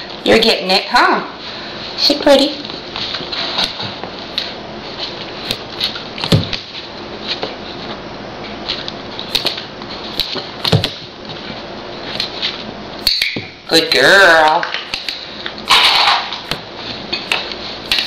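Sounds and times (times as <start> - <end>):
heavy thumps: 5.4 - 6.7, 10.6 - 11.3.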